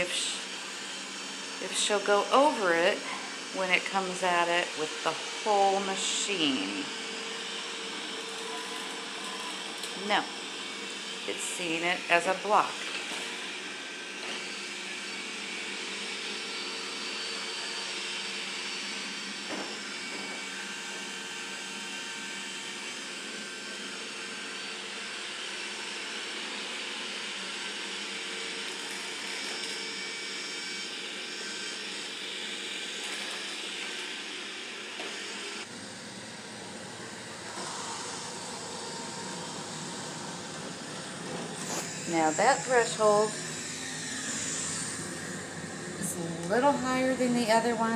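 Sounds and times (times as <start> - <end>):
robot vacuum whirring: 0.0 - 18.7, 28.7 - 47.9.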